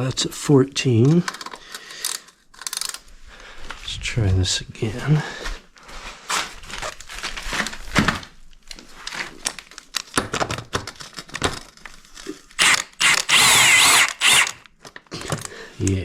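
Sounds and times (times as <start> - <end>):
impact wrench burst: 12.6 - 14.6.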